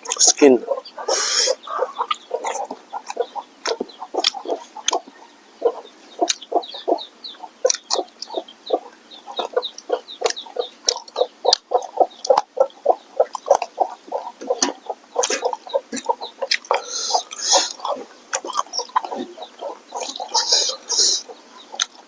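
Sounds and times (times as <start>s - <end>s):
person chewing food: 14.4s - 19.3s.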